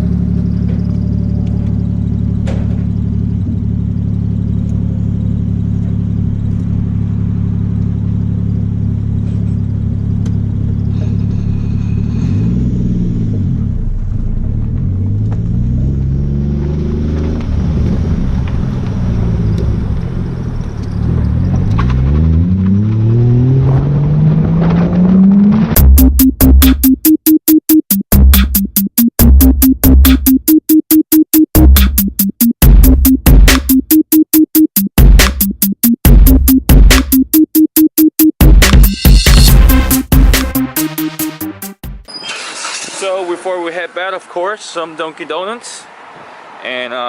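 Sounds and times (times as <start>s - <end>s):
car engine revving through gears: 0.0s - 26.6s.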